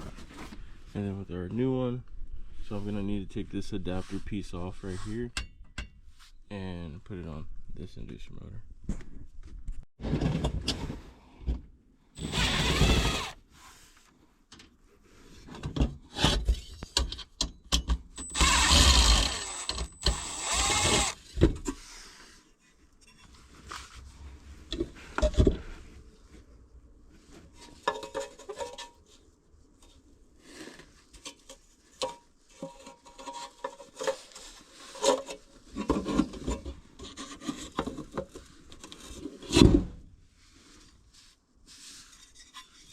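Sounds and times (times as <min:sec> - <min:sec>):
cordless drill running: 0:12.2 - 0:13.4, 0:18.2 - 0:21.2.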